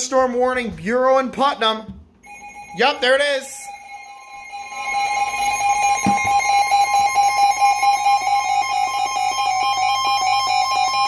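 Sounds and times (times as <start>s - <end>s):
harsh pulsing electronic alarm: 2.2s - 11.0s
steady high alarm tone: 2.2s - 11.0s.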